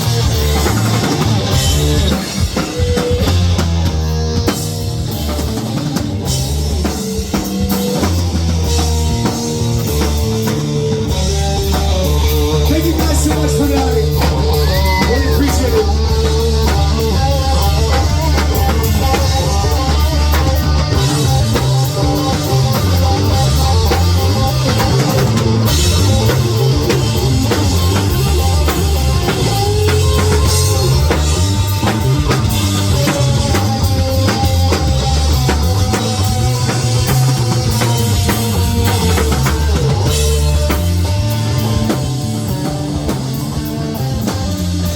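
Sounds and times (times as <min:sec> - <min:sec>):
drum kit beat: 0:00.0 - 0:44.9
live rock band playing: 0:00.0 - 0:44.9.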